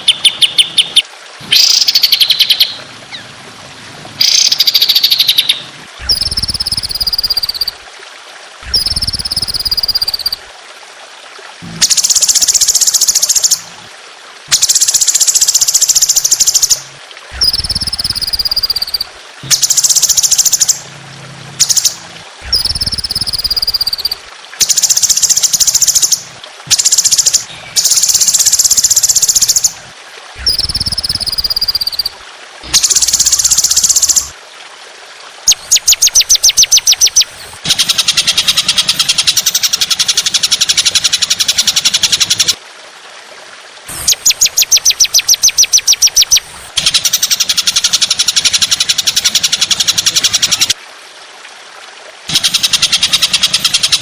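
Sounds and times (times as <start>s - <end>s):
songbird song: 0.0s - 7.8s, 8.6s - 10.5s, 11.7s - 13.7s, 14.5s - 21.0s, 21.6s - 29.8s, 30.4s - 34.4s, 35.5s - 42.6s, 43.9s - 50.8s.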